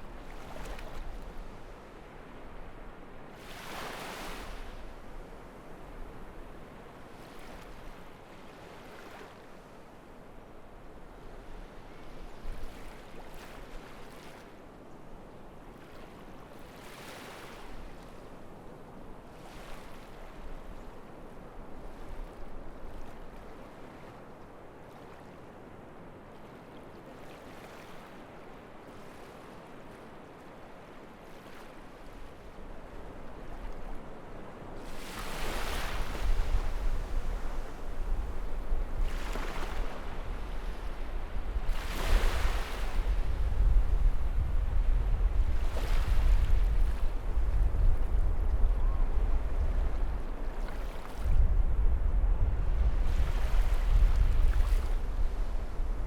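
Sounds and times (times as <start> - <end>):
waves washing onto beach: 26.5 - 56.0
wind buffeting microphone: 35.9 - 50.5, 51.1 - 56.0.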